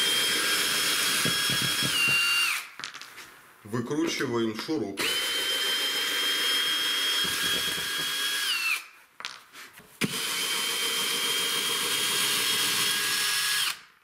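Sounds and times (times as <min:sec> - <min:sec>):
drill-driver whining: 0:00.0 - 0:02.7, 0:05.0 - 0:08.9, 0:10.0 - 0:13.8.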